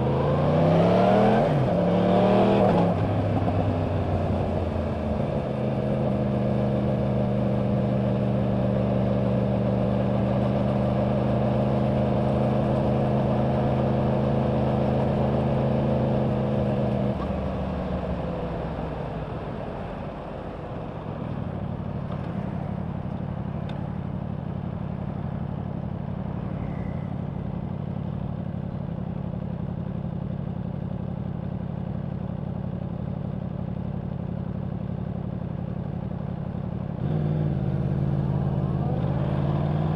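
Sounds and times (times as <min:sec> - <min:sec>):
motorcycle engine: 0:20.9 - 0:39.9.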